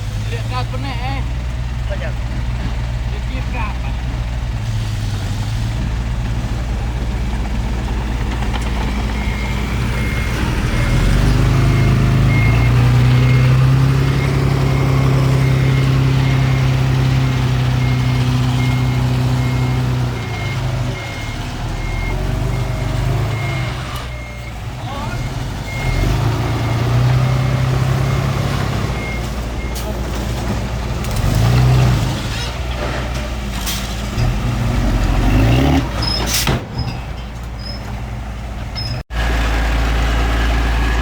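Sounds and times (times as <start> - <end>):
heavy diesel engine running: 0.0 - 31.5, 38.1 - 41.0
reversing alarm beeping: 9.0 - 29.9.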